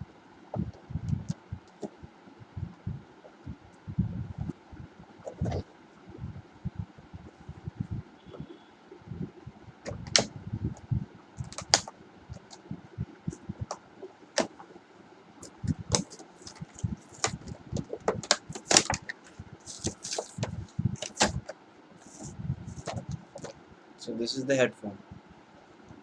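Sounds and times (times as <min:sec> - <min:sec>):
cardboard and plastic rustling: 0:15.4 - 0:23.6.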